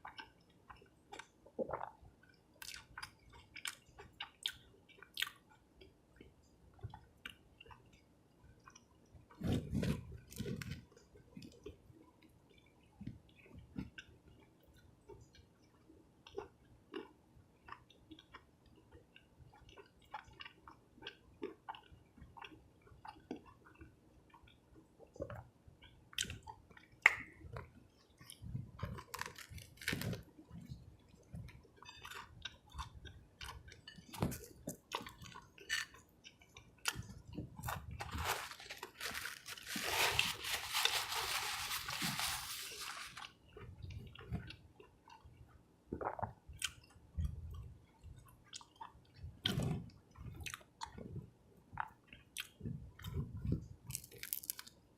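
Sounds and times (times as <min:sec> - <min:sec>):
person biting and chewing: 0:28.3 - 0:30.3, 0:36.6 - 0:43.3, 0:52.4 - 0:54.7.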